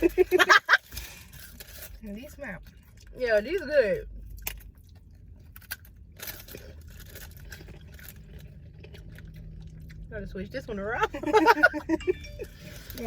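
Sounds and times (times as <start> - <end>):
person chewing crunchy snack: 4.2 - 10.1.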